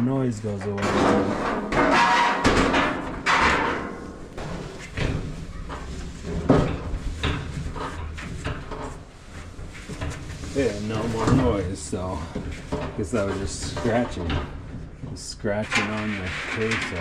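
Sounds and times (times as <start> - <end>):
dryer drum knocks and clunks: 0.8 - 8.8.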